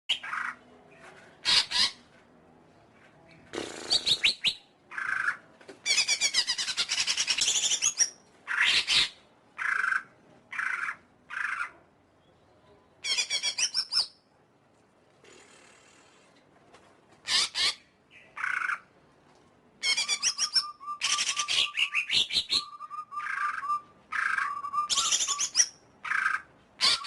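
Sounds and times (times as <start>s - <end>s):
bird singing whistles and trills: 19.9s - 25.8s.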